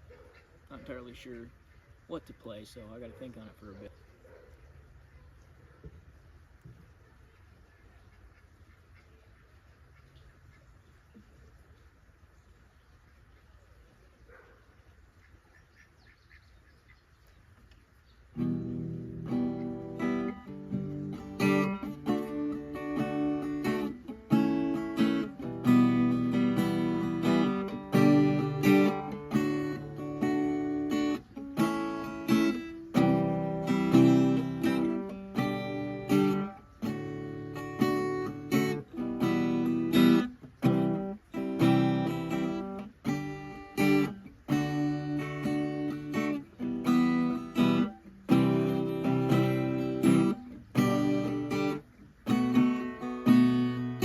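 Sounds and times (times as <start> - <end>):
acoustic guitar strumming chords: 18.4 - 54.0.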